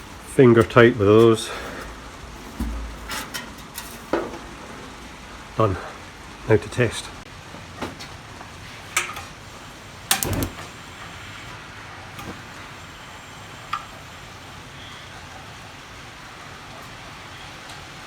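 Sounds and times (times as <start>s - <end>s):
burner lighting thump: 0.0s - 5.2s, 10.1s - 11.1s, 12.2s - 12.6s
steady gas hiss: 0.0s - 18.0s.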